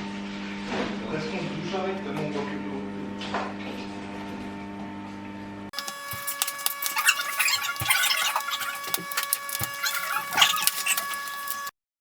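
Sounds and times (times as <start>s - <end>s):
crackling handling noise: 5.8s - 11.7s.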